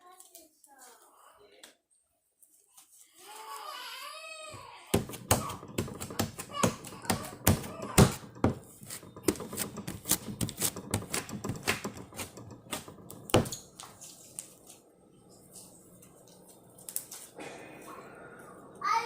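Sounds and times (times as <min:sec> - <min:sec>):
sharp clicks and taps: 0:05.0 - 0:13.9.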